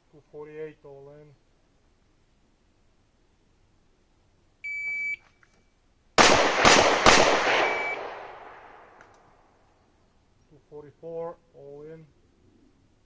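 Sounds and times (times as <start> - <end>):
pistol shots echoing: 6.2 - 9.0
shot timer beep: 7.6 - 8.1.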